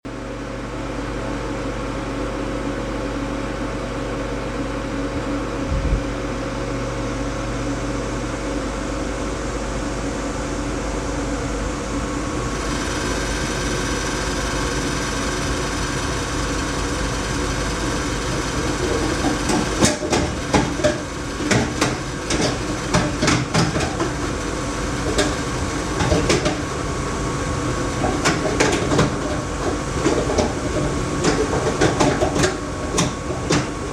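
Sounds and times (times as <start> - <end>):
gas boiler humming: 0.1 - 33.9.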